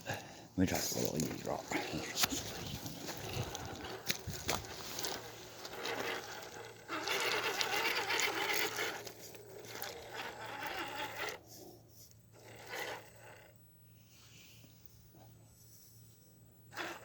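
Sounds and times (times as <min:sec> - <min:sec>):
tires scraping over rock: 0:00.0 - 0:13.5, 0:16.7 - 0:17.0
small electric motor whirring: 0:01.8 - 0:13.6, 0:16.6 - 0:17.0.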